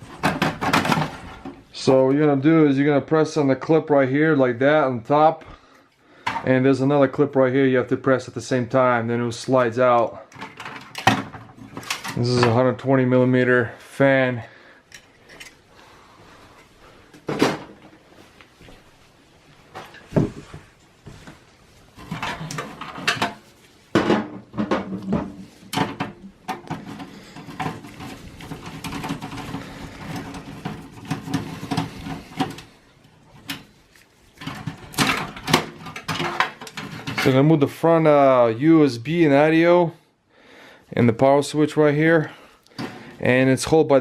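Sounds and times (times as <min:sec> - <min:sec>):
small clattering and rubbing: 0:10.3 - 0:12.7, 0:16.4 - 0:37.6.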